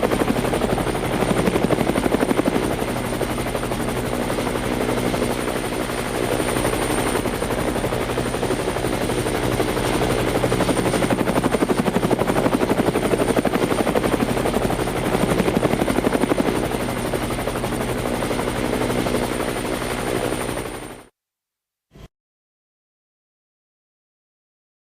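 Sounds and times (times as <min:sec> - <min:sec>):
helicopter rotor chopping: 0:00.0 - 0:21.1.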